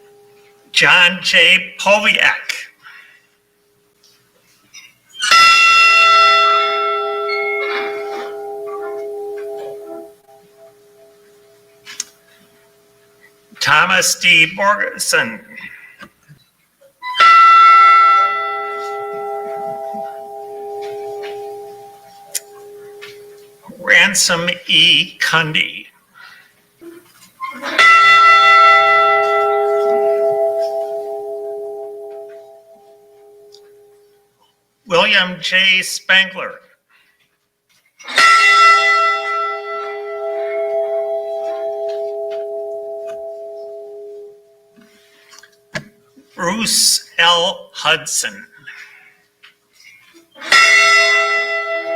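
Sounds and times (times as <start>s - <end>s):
bronze bell ringing: 0.0s - 1.5s, 5.3s - 11.8s, 17.0s - 24.5s, 27.6s - 34.1s, 38.1s - 45.7s, 50.5s - 51.9s.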